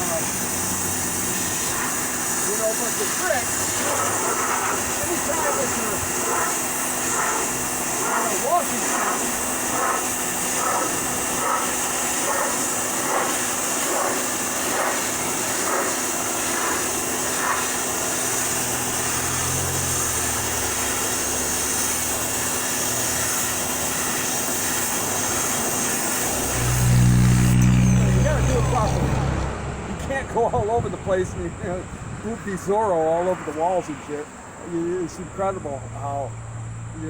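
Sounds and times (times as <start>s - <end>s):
pressure washer spraying water: 0.0s - 29.2s.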